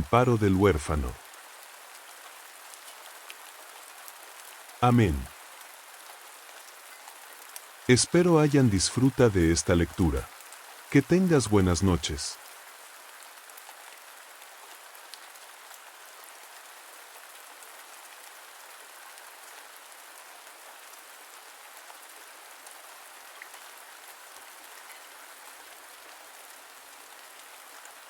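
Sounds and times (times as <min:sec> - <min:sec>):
steady rain: 0:00.0 - 0:28.0.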